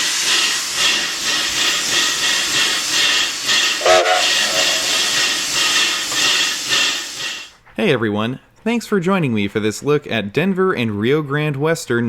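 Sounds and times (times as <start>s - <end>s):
steam locomotive chuffing: 0.0s - 7.6s
brief tonal note: 3.8s - 4.7s.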